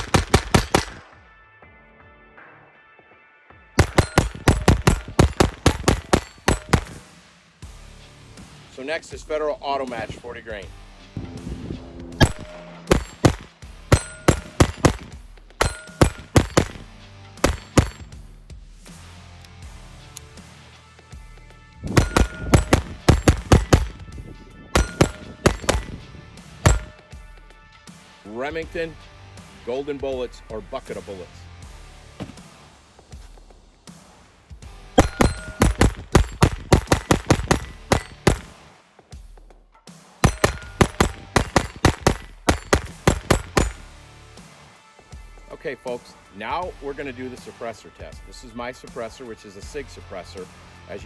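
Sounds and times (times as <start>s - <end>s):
pistol shots: 0.0s - 1.2s, 3.8s - 7.1s, 12.2s - 18.1s, 21.9s - 24.1s, 24.8s - 27.0s, 35.0s - 38.6s, 40.2s - 44.0s.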